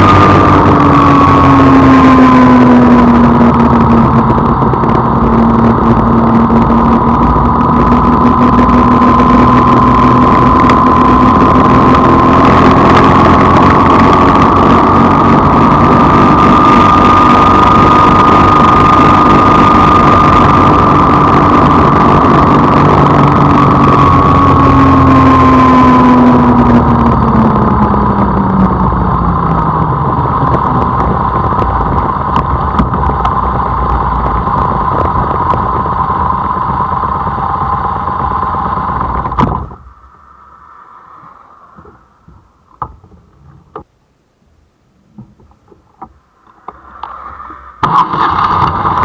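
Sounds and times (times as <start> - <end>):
wheels rumbling on ground: 0.0 - 49.0.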